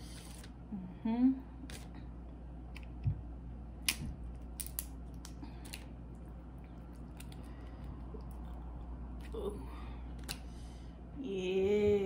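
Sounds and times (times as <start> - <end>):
shells cracking clicks: 3.8 - 5.9.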